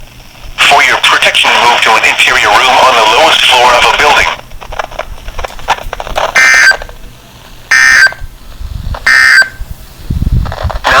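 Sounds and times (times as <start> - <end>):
digital data tone bursts: 6.4 - 6.8, 7.7 - 8.2, 9.1 - 9.6.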